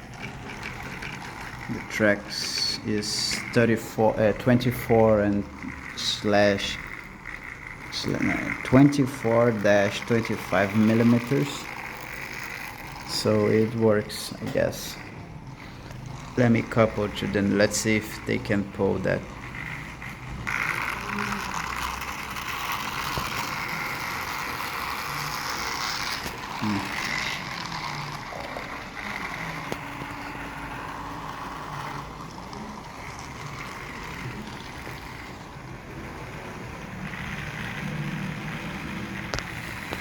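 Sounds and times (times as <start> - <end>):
toy train motor whirring: 0.0 - 40.0
toy train running gear clatter: 0.0 - 40.0.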